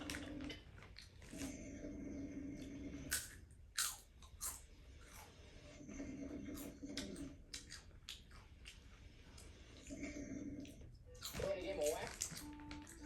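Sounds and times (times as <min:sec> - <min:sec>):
cat chewing crunchy food: 0:00.0 - 0:13.0
steady low hum: 0:00.0 - 0:13.0.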